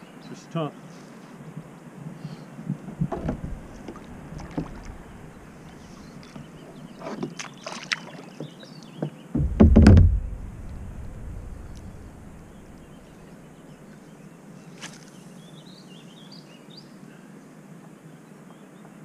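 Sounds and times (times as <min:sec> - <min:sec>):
paddle knocking on plastic hull: 0:02.7 - 0:05.0, 0:09.4 - 0:12.6
loud low thump and rumble: 0:03.0 - 0:05.9, 0:09.4 - 0:13.6
water splashing from paddle: 0:03.0 - 0:08.5, 0:09.4 - 0:13.3.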